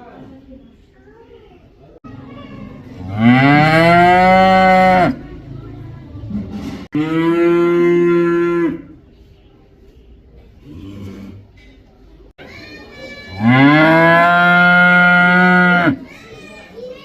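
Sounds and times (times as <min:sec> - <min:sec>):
cow mooing: 0:03.0 - 0:05.2, 0:06.9 - 0:08.9, 0:13.4 - 0:16.0.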